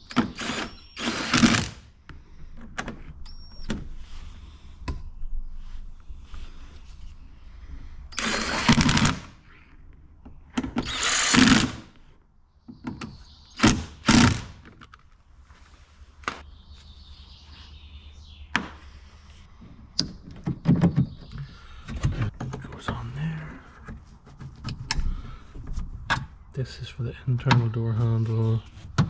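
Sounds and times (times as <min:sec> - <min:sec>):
sharp clicks: 0:08.1 - 0:09.3, 0:10.6 - 0:11.9, 0:13.6 - 0:15.0.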